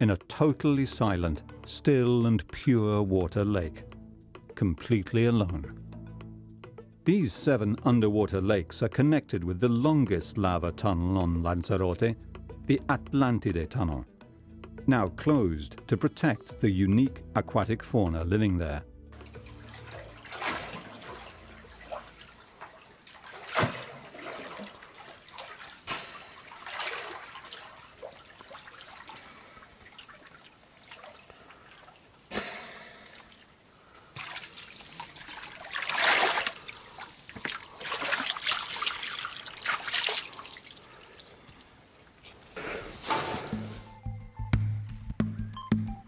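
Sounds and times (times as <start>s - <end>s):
water drips: 19.2s - 43.8s
water trickling and splashing: 19.2s - 43.9s
water sloshing: 19.2s - 44.0s.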